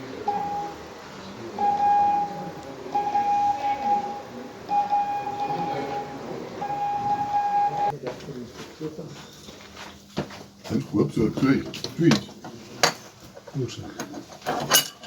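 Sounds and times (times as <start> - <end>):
morse code beeps: 0.2 - 0.8, 1.6 - 7.9.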